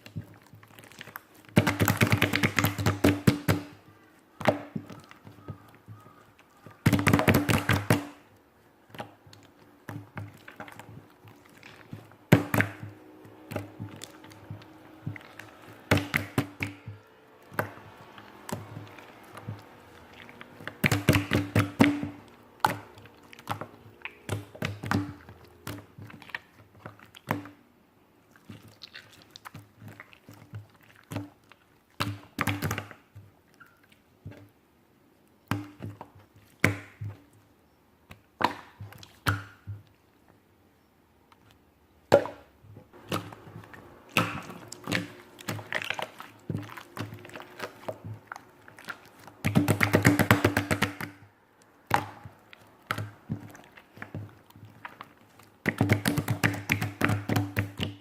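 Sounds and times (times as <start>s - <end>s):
knocks of hard objects: 4.4s - 8.2s, 11.6s - 19.8s, 20.4s - 25.4s, 49.4s - 51.2s.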